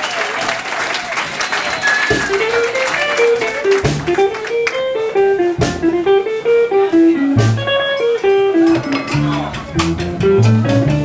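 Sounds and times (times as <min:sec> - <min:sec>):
light percussion hits: 0:02.1 - 0:04.4
bass notes: 0:02.1 - 0:11.0
guitar melody: 0:02.1 - 0:11.0.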